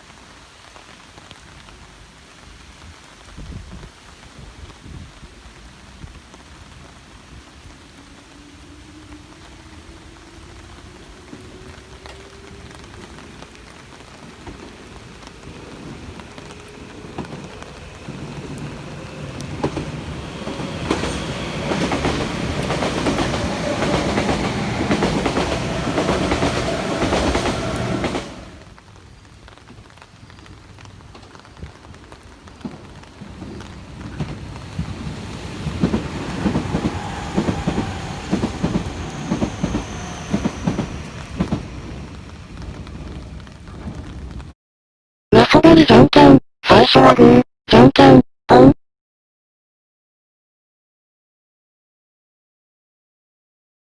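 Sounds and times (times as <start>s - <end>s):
rain hissing: 0.0s - 44.6s
train motor whine: 7.9s - 28.7s, 34.4s - 42.2s
train wheels clattering over rails: 9.2s - 28.7s, 31.1s - 44.3s.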